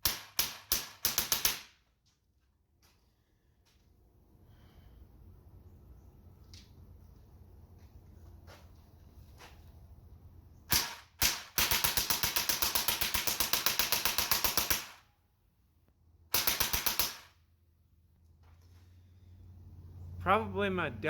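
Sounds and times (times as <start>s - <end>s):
bb machine gun firing: 0.0s - 1.8s, 10.7s - 15.1s, 16.3s - 17.4s.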